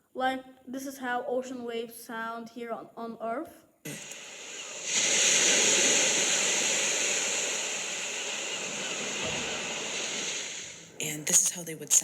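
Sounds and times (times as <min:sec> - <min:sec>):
ocean waves surf: 0:04.1 - 0:11.0.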